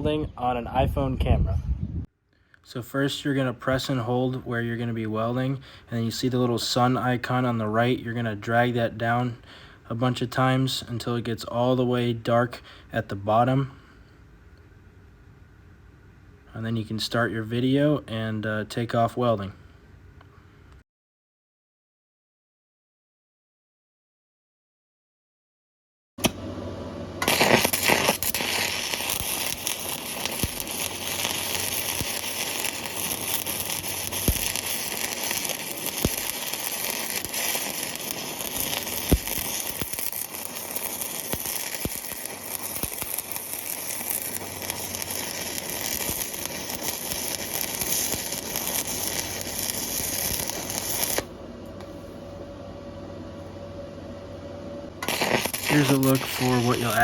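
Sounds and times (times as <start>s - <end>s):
welding arc crackling: 27.2s - 51.3s, 55.0s - 57.0s.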